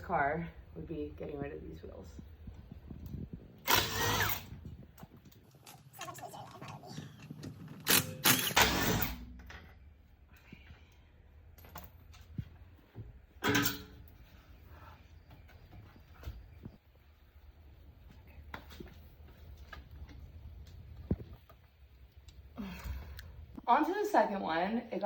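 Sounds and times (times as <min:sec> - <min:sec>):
harsh mechanical bursts: 0:03.5 - 0:04.8, 0:07.7 - 0:09.2.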